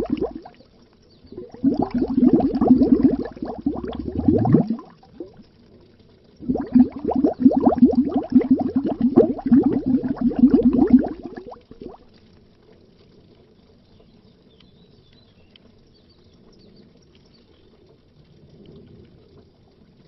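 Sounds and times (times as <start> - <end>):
small bubbles popping: 0.0 - 5.6, 6.4 - 12.2
underwater low wash: 0.0 - 14.4, 15.5 - 20.0.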